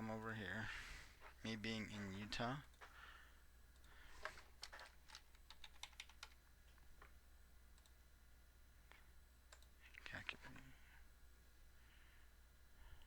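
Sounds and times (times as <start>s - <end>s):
faint typing on computer keyboard: 3.7s - 8.1s, 8.8s - 10.7s.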